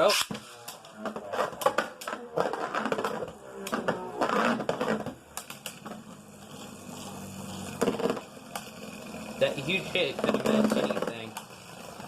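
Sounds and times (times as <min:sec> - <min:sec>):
spinning tops whirring: 0:04.2 - 0:12.0.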